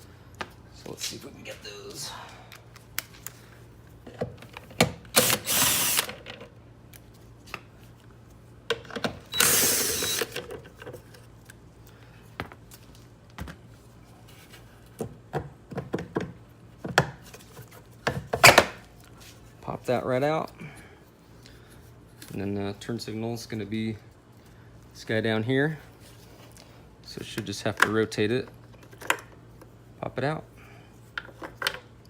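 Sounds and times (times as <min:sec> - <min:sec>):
power tool removing bolts: 0:05.1 - 0:06.3, 0:09.3 - 0:10.5.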